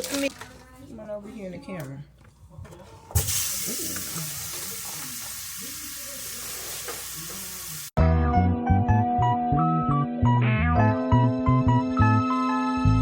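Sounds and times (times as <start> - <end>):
food sizzling in frying pan: 3.2 - 8.0.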